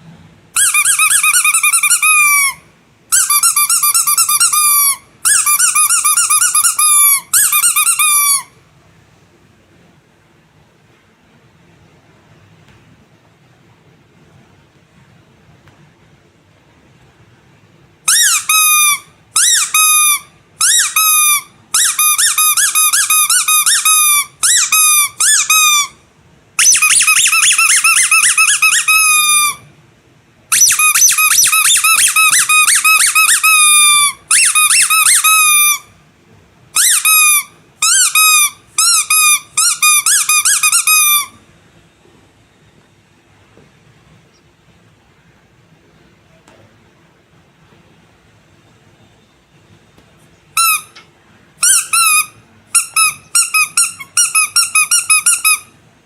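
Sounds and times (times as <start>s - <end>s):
squeaky rubber toys squeaking: 0.6s - 8.6s, 18.1s - 26.0s, 26.6s - 29.7s, 30.5s - 35.9s, 36.8s - 41.4s, 50.6s - 55.8s.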